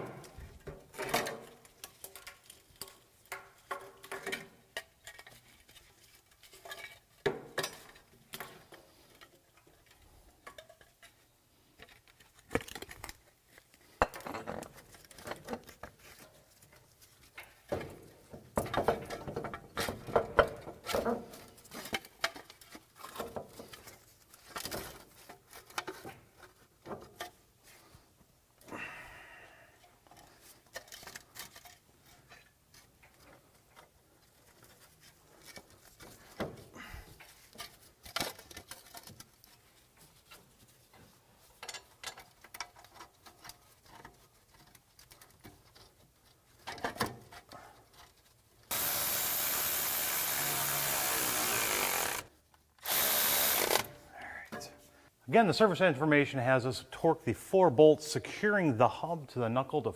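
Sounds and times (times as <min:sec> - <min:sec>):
power tool running: 0:48.7 - 0:52.2, 0:52.8 - 0:53.9.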